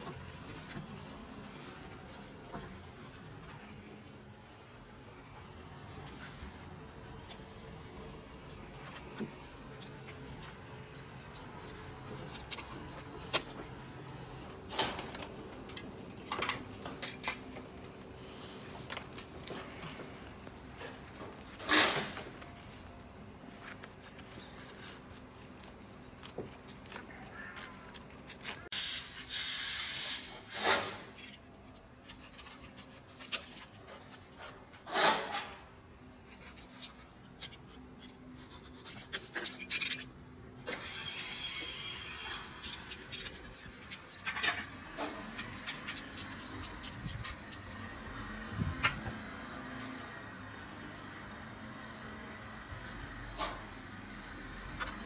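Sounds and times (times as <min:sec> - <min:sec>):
loud hiss: 0:28.7 - 0:31.0.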